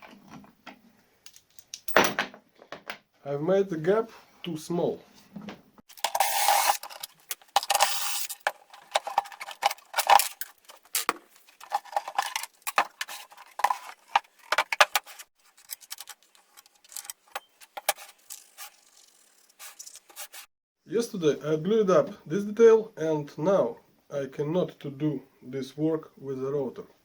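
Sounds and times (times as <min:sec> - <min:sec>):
tools scraping and knocking on wood: 0:05.3 - 0:20.5.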